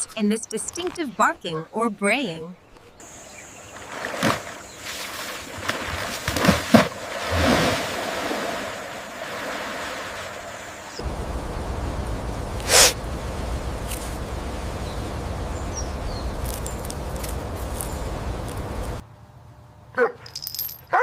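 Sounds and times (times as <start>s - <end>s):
outdoor background noise: 0.0s - 21.0s
low rumble: 11.0s - 19.0s
zebra snorting: 12.6s - 13.0s.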